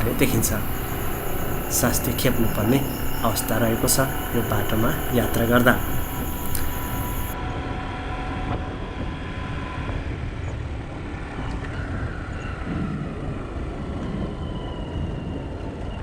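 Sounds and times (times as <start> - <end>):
vehicle on rough road rumble: 0.0 - 7.4.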